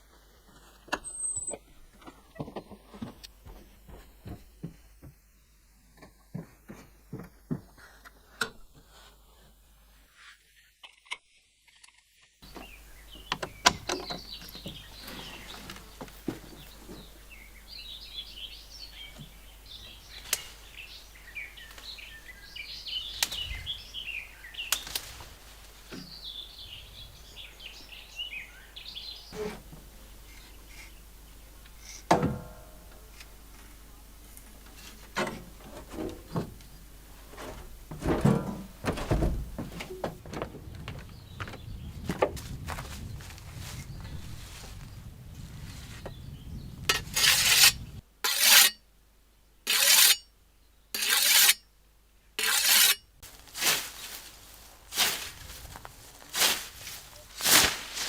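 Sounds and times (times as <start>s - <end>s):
birds chirping: 12.4s - 25.0s, 25.8s - 32.1s, 35.5s - 43.2s.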